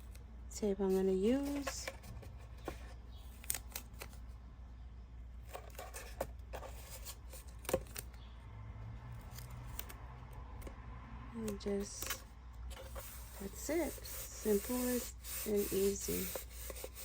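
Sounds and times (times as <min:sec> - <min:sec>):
tape clicks and rustles: 0:01.5 - 0:04.3, 0:05.4 - 0:08.3, 0:09.2 - 0:10.8, 0:11.4 - 0:13.4.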